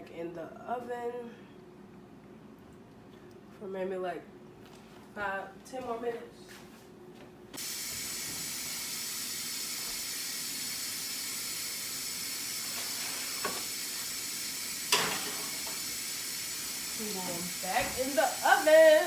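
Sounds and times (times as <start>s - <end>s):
chicken sizzling in a pan: 7.6s - 19.0s.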